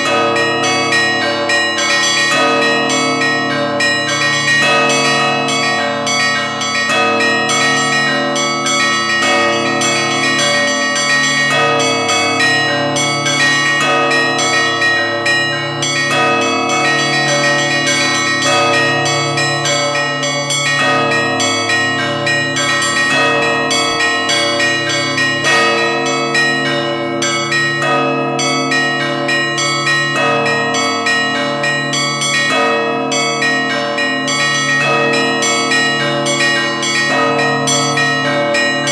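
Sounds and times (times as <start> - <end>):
large church bells humming: 0.0 - 38.9
small church bells striking: 0.0 - 38.9.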